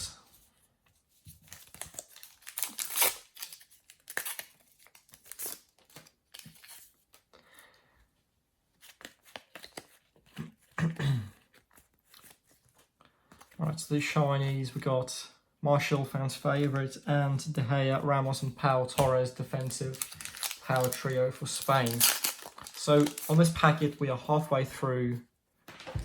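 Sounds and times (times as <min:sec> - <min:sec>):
cards being handled: 0:01.0 - 0:07.3, 0:08.7 - 0:10.8, 0:11.4 - 0:13.6, 0:18.4 - 0:24.0
foil packet tearing and crinkling: 0:01.4 - 0:07.0, 0:19.0 - 0:23.9.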